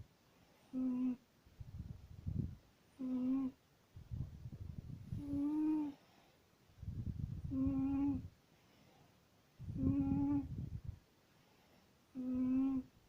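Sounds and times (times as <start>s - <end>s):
cat snoring: 0.7s - 1.2s, 3.0s - 3.6s, 5.2s - 6.0s, 7.5s - 8.2s, 9.7s - 10.5s, 12.1s - 12.9s.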